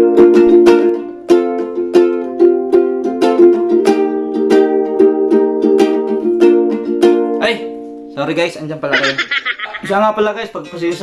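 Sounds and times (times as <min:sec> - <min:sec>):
upbeat ukulele strumming: 0:00.0 - 0:08.2.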